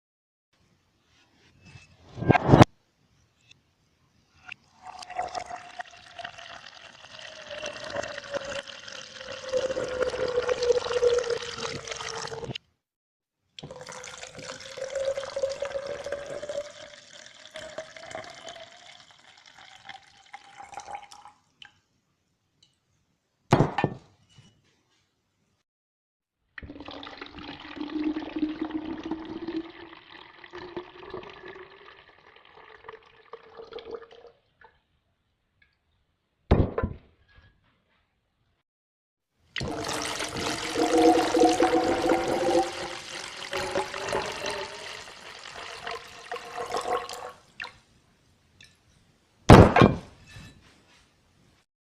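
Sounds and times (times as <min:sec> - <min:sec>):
water pouring into container: 0:04.7 - 0:12.6, 0:13.6 - 0:21.5, 0:26.6 - 0:34.6, 0:39.6 - 0:47.8.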